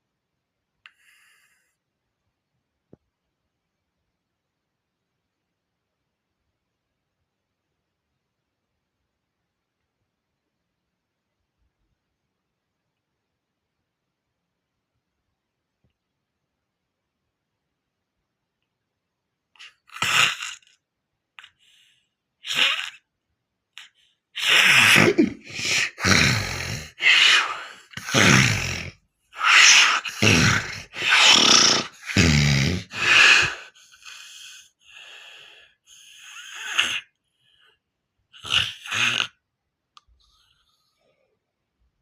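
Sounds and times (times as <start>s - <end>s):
faint breaths: 0.9s - 1.9s
heavy snoring: 24.4s - 37.1s, 38.4s - 39.4s.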